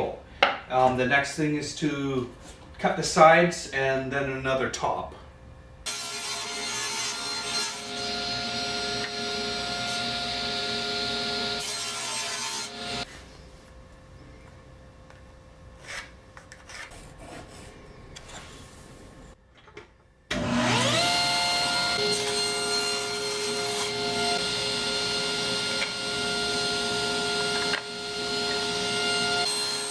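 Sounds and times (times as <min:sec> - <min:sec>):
electric saw cutting wood: 0:05.9 - 0:13.1, 0:20.3 - 0:29.9
saw motor whining: 0:20.4 - 0:29.9.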